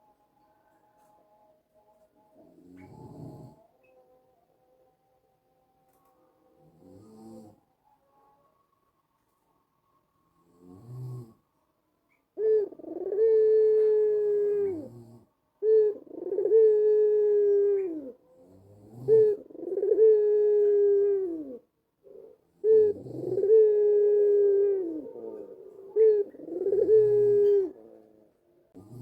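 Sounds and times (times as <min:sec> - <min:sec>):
dove cooing: 0:02.4 - 0:03.6, 0:12.4 - 0:29.0.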